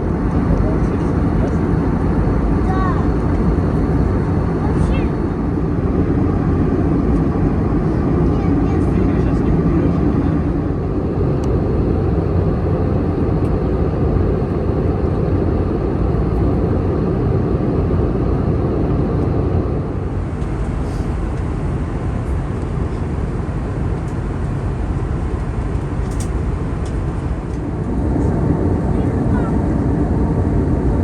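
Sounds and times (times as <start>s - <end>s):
airliner cabin engine rush: 0.0s - 31.0s.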